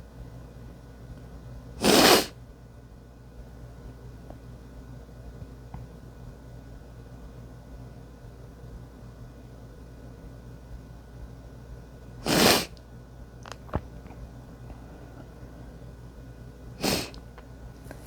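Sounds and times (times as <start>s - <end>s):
person sneezing: 1.8s - 2.3s, 12.2s - 12.7s, 16.8s - 17.2s.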